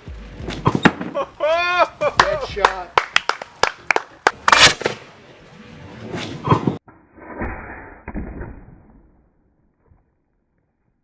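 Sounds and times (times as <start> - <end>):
potato cannon whoosh and thump: 6.0 - 9.0.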